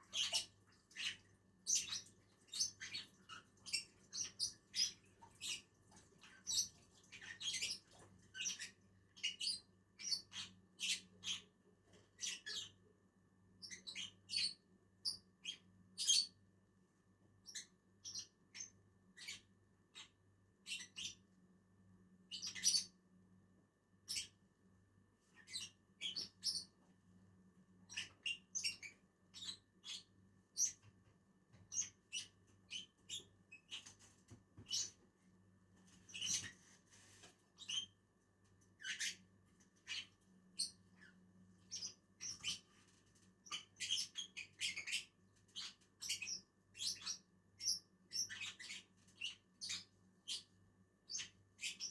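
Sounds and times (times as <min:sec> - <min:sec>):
birds chirping: 0:00.0 - 0:11.6, 0:27.9 - 0:30.9, 0:31.7 - 0:33.9, 0:34.6 - 0:35.0, 0:36.1 - 0:36.6, 0:38.8 - 0:39.2, 0:39.8 - 0:42.7, 0:43.4 - 0:50.5.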